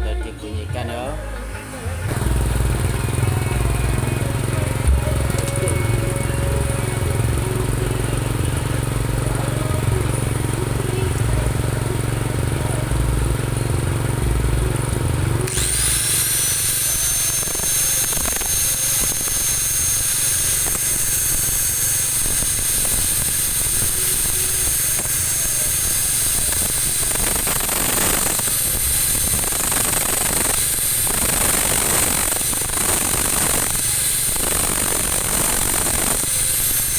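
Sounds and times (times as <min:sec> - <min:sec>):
angle grinder whining: 0:00.1 - 0:36.9
motorcycle engine running: 0:01.4 - 0:36.9
grinding metal: 0:15.3 - 0:36.9.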